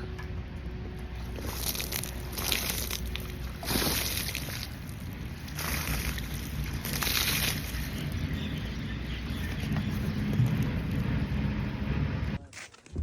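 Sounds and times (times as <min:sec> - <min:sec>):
water sloshing and splashing: 0:01.2 - 0:11.0.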